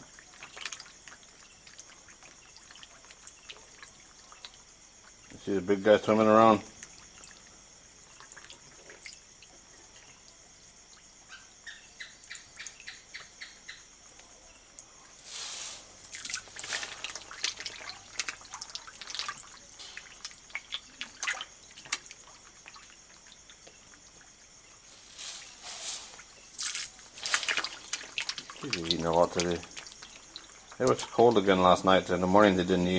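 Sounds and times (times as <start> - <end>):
fish splashing at water surface: 15.1 - 31.0.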